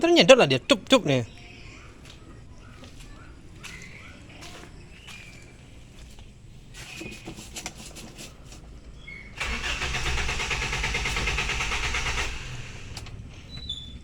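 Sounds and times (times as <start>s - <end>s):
engine cranking by starter motor: 9.3s - 14.0s.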